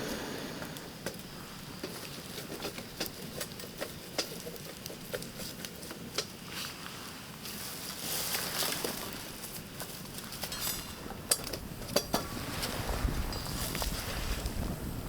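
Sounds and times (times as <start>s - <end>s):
rustling and handling noises: 1.0s - 14.8s
short metallic clinks: 10.4s - 11.5s
wind rumbling on microphone: 10.8s - 15.0s.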